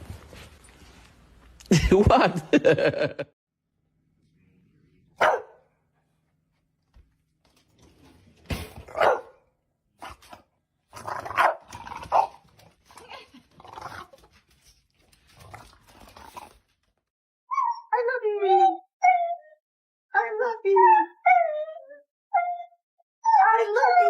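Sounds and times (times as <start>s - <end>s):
dog barking: 5.2s - 5.7s, 8.9s - 9.4s, 11.4s - 12.3s.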